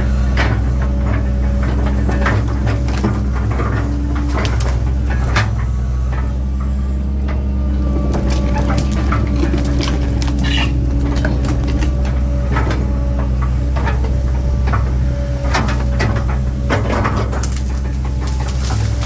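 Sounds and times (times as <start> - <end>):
excavator diesel engine running: 0.0 - 19.0
sharp knocks and cracks of brush: 1.5 - 5.6, 8.0 - 19.0.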